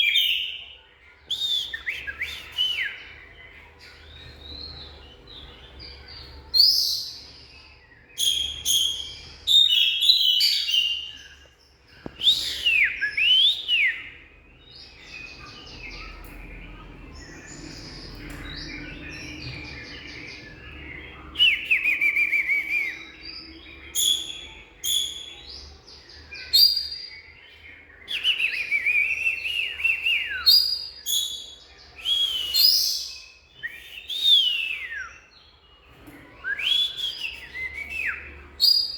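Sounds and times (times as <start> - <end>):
bird singing whistles: 1.3 - 3.1, 12.0 - 14.2, 21.4 - 25.4, 28.0 - 35.3, 36.4 - 38.9.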